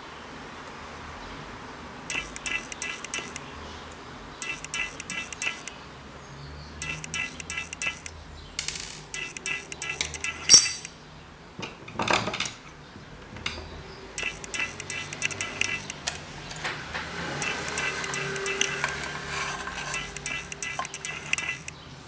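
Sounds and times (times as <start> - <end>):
clinks of small parts and tools: 8.6 - 10.9.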